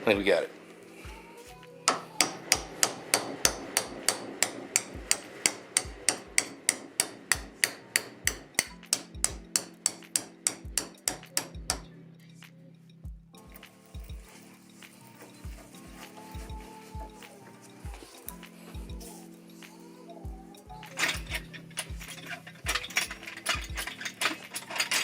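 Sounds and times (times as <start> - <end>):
hammer tapping: 1.8 - 11.9.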